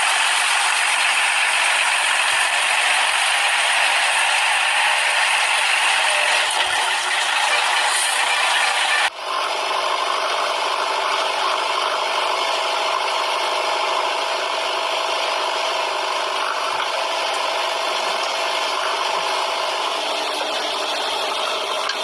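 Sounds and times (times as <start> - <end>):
toy vehicle motor whirring: 0.0 - 9.2.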